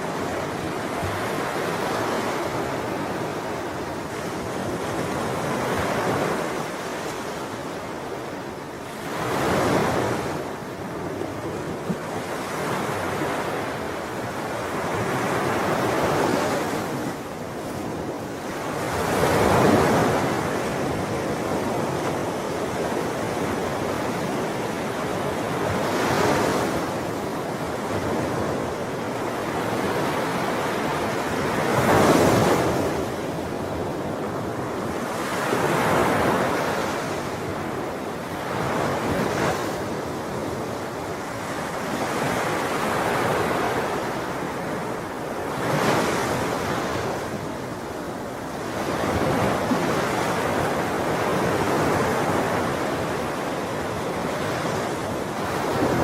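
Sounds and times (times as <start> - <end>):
sea waves breaking on shore: 0.0 - 56.0.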